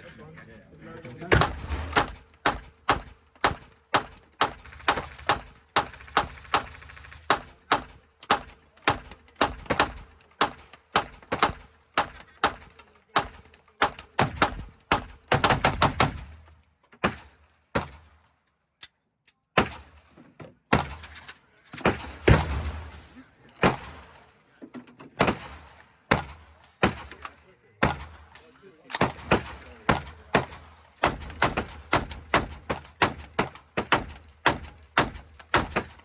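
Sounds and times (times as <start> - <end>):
gunshots: 1.3 - 16.4, 19.6 - 20.0, 21.8 - 24.3, 25.2 - 27.2, 27.8 - 36.0.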